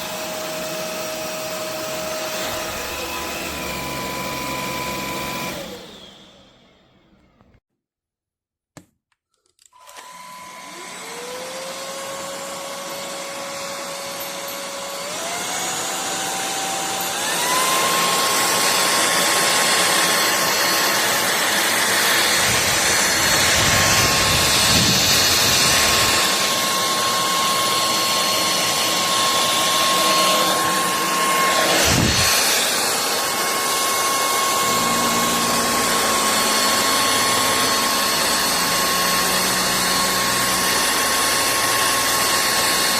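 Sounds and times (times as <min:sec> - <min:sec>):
vacuum motor whine: 0:00.0 - 0:07.6, 0:09.8 - 0:42.9.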